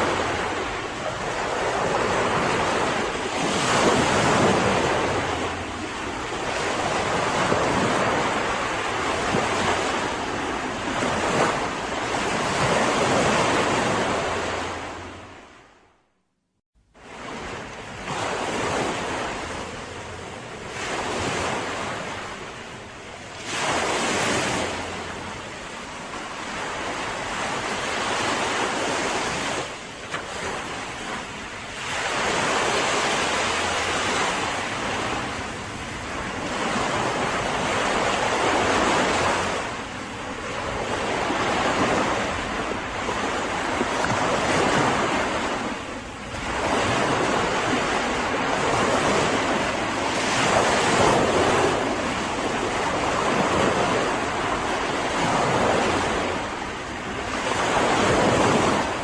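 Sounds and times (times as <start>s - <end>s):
sea waves breaking on beach: 0.0s - 15.7s, 17.0s - 59.0s.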